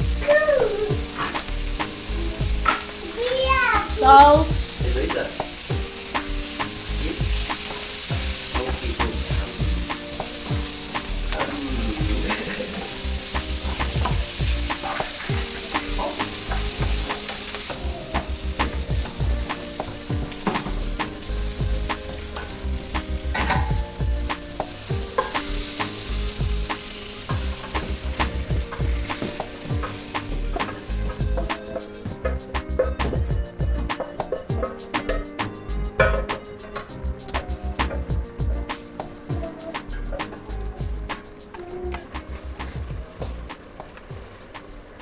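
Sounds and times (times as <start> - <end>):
sauce frying in oil: 0.0 - 33.6.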